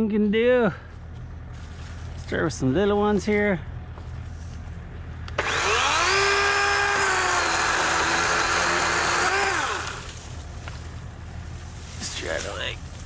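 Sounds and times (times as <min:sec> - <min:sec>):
electric chainsaw whining: 0:05.4 - 0:10.2.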